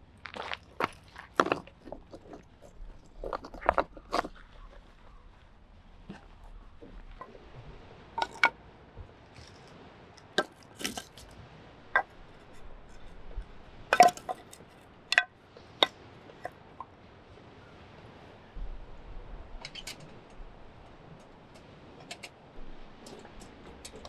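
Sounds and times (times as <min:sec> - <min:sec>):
cookware clinking and knocking: 0:14.0 - 0:15.3.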